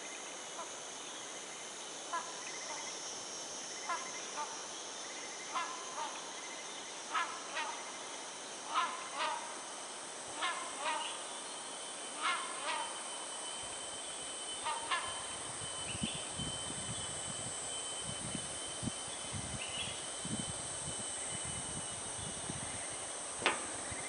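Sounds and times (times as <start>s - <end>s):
hornbill calling: 10.4s - 11.3s, 12.2s - 13.7s, 14.4s - 16.1s.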